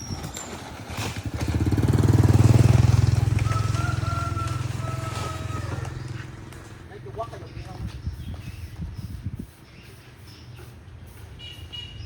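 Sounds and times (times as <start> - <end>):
vehicle passing by: 0.7 - 7.5.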